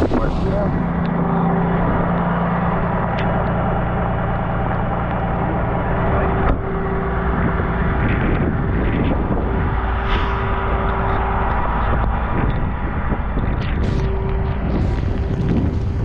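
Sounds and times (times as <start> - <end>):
truck engine idling: 0.0 - 16.0
rain rushing: 9.7 - 16.0.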